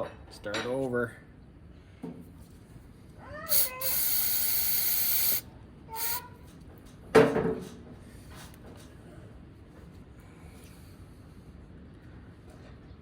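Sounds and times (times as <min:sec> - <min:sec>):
aerosol spray hissing: 0:03.5 - 0:05.4, 0:06.0 - 0:06.2.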